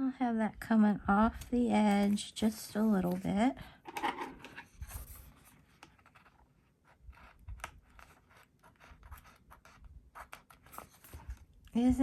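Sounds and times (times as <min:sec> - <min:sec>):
paper sticker rustling and tapping: 0:01.3 - 0:04.0.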